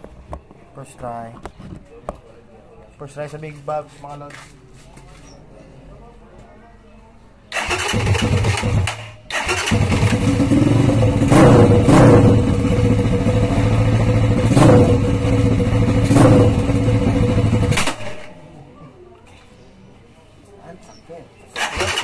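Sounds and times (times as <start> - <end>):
motorcycle engine starting and idling: 7.5 - 18.4, 21.5 - 22.0.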